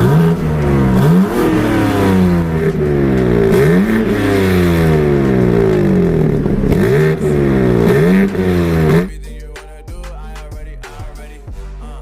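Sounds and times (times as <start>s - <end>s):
car engine revving: 0.0s - 9.2s.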